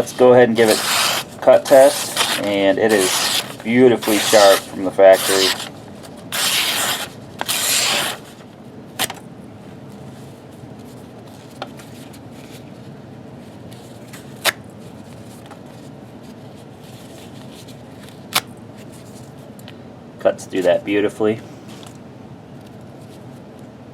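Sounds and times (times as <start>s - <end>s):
knife blade cutting strokes: 0.0s - 5.7s, 6.3s - 8.3s.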